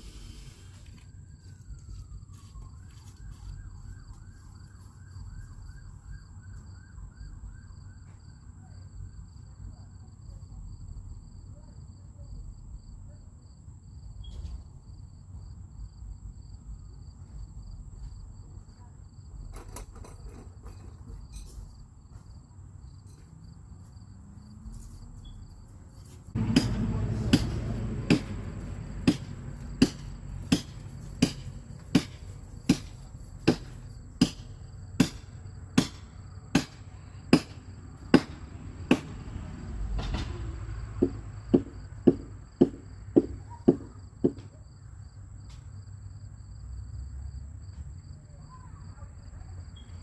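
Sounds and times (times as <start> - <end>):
crickets trilling: 0.0 - 50.0
hammer blows: 26.4 - 39.2, 41.0 - 44.5.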